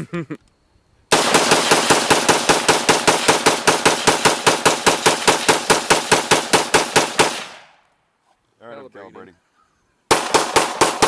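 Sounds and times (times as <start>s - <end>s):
rifle firing rapid shots: 1.1s - 7.7s, 10.1s - 11.0s.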